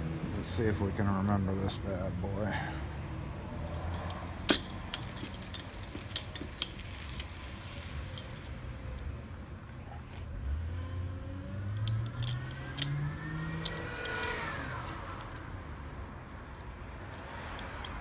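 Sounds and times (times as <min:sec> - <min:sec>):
metal clicks of lock parts: 0:03.6 - 0:07.4, 0:08.1 - 0:09.1, 0:11.7 - 0:15.5, 0:16.4 - 0:18.0
vehicle engine accelerating: 0:10.3 - 0:16.2.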